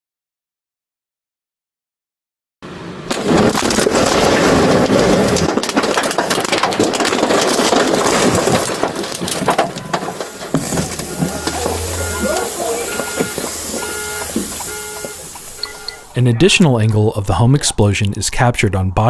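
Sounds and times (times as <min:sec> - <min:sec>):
building crashing apart: 0:03.1 - 0:16.2
explosion blast: 0:03.1 - 0:16.2.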